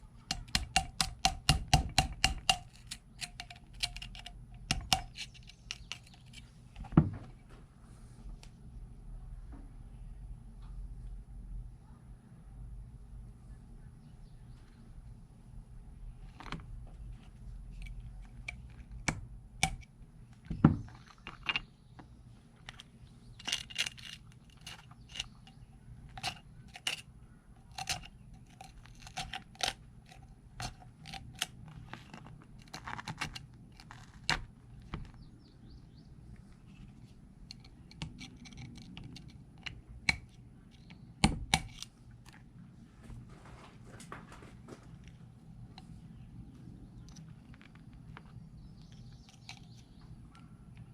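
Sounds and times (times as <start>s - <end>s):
metal tool scraping and clicking: 0.3s - 6.4s, 17.8s - 19.9s, 22.7s - 27.1s, 27.7s - 31.5s.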